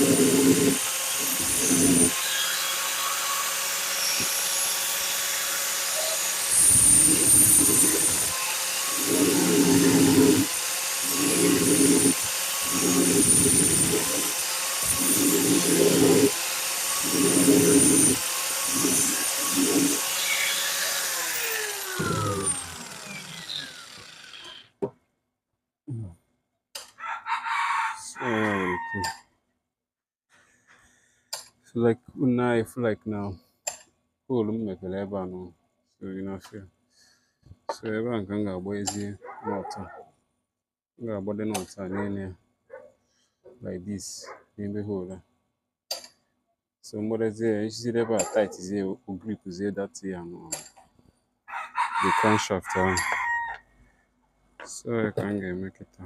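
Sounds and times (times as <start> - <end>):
low drilling thuds: 0.0 - 2.2
electric drill whining: 0.0 - 24.7.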